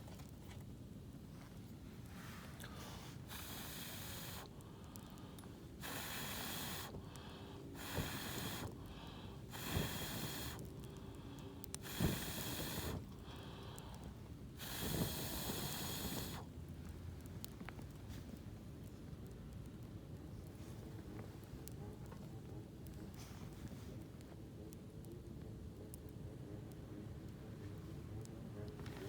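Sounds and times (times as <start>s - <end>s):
person blowing breath: 2.7s - 14.0s, 14.6s - 16.5s.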